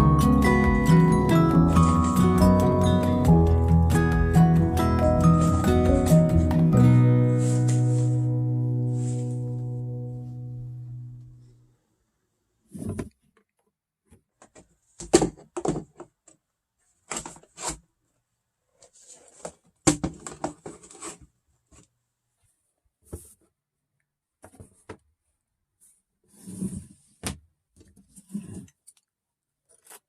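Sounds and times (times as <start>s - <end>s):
objects knocking and rattling: 14.4s - 16.2s.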